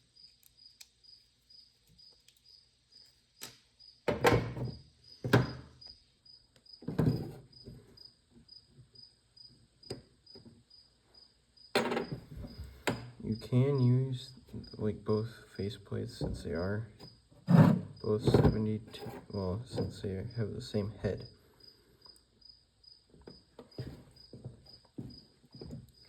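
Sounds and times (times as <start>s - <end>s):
cricket chirping: 0.0s - 6.9s, 7.5s - 15.0s, 20.7s - 26.0s.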